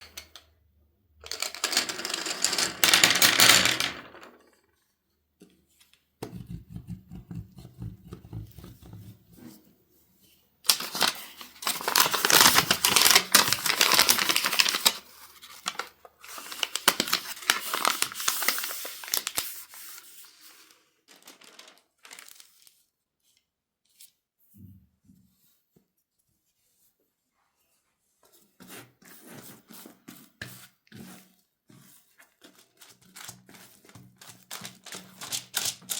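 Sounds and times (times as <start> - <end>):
rustling crinkling noise: 10.7 - 22.8.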